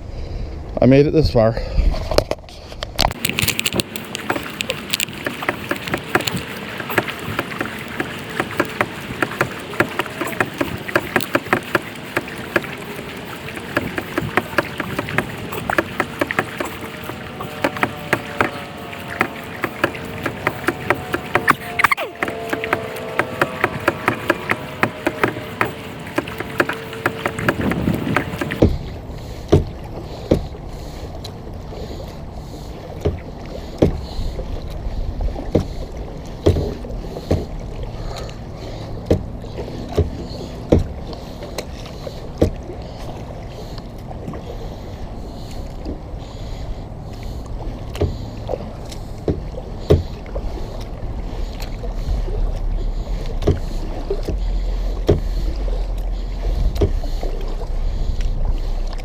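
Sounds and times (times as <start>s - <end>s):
wind rumble on microphone: 0.0s - 29.8s, 48.6s - 59.0s
paddle strokes through water: 2.0s - 59.0s
paddle knocks: 3.1s - 28.8s, 51.4s - 59.0s.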